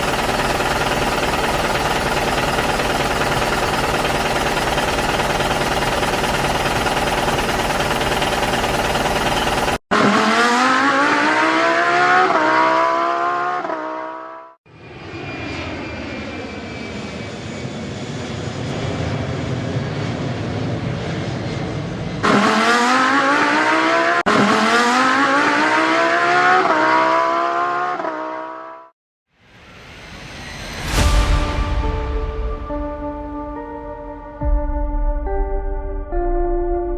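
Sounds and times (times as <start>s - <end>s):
rough engine drone: 0.0s - 13.4s
race car engine accelerating: 0.0s - 14.6s, 22.2s - 28.9s.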